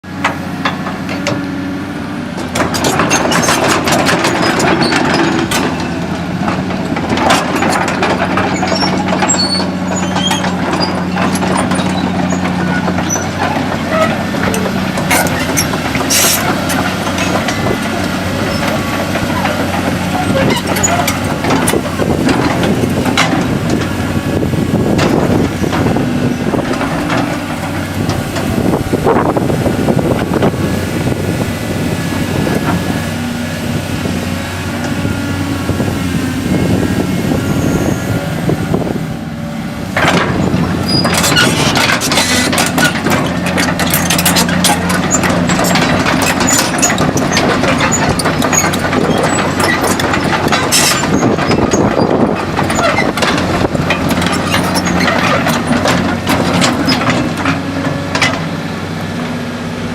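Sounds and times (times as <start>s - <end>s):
excavator diesel engine running: 0.0s - 59.9s
sharp knocks and clanks: 2.4s - 30.6s, 39.9s - 58.6s.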